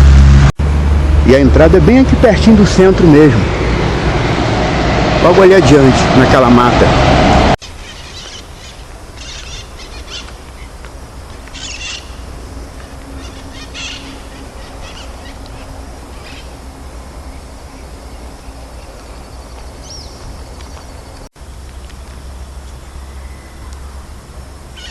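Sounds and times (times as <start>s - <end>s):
low rumble: 0.0s - 7.6s
birds chirping: 7.6s - 24.2s.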